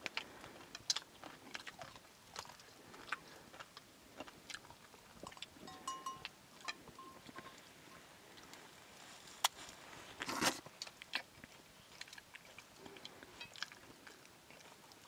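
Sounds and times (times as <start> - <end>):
food crunch: 0.0 - 7.6, 9.4 - 15.0
person chewing food: 0.0 - 7.7, 9.4 - 15.0.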